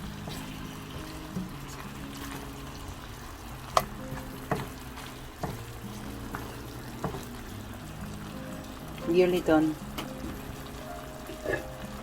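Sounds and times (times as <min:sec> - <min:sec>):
chicken sizzling in a pan: 0:00.0 - 0:12.0.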